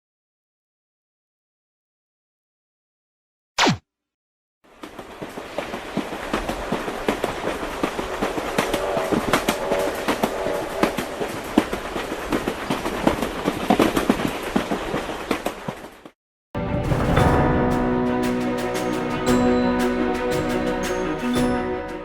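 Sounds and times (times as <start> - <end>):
train clattering on rails: 4.8 - 15.8, 16.8 - 22.0.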